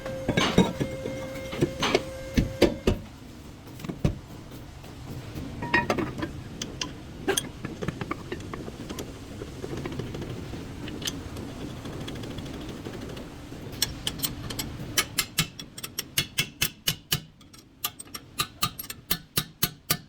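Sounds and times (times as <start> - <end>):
low background hum: 0.0 - 20.0
metal tools clicking and knocking: 13.8 - 20.0.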